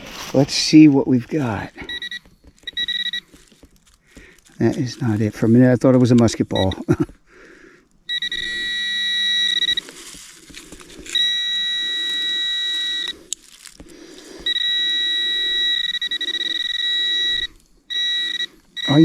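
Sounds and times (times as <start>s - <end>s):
dirt scuffing: 0.0s - 6.2s, 9.7s - 11.3s
metal detector alarm tone: 1.6s - 3.4s, 6.5s - 6.8s, 8.1s - 10.0s, 11.1s - 13.2s, 14.4s - 19.0s.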